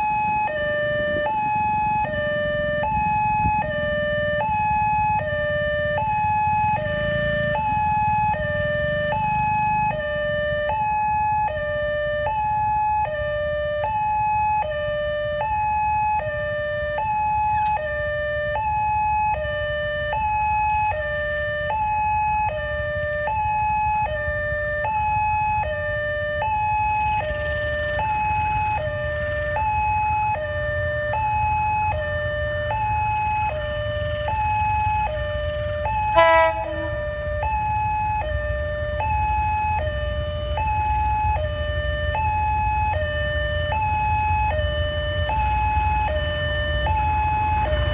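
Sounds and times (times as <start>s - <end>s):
two-tone warning siren: 0.0s - 47.9s.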